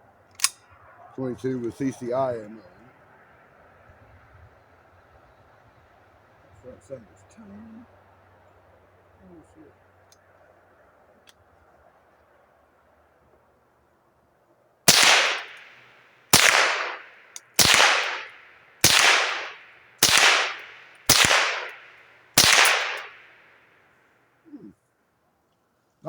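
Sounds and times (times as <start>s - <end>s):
rifle shots: 14.9s - 23.4s.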